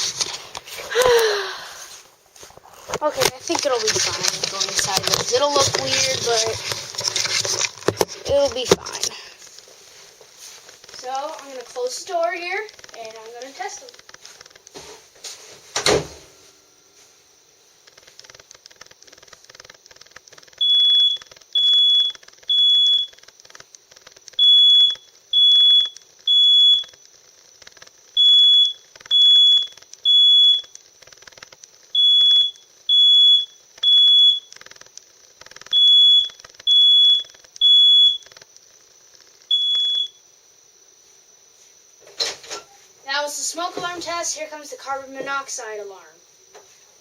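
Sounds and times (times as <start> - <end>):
smoke alarm beeping: 20.5 - 23.2, 24.4 - 27.0, 28.1 - 30.8, 31.9 - 34.7, 35.6 - 38.4, 39.5 - 40.3.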